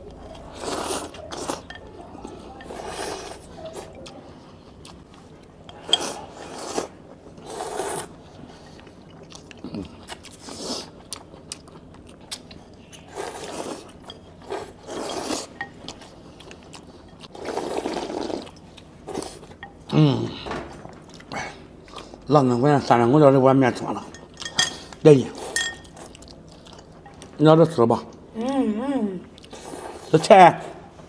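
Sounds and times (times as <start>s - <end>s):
chewing: 0.0s - 19.8s, 20.9s - 22.3s, 24.2s - 27.4s
person slurping noodles: 0.5s - 1.6s, 5.8s - 8.2s, 13.1s - 15.5s, 17.4s - 19.4s.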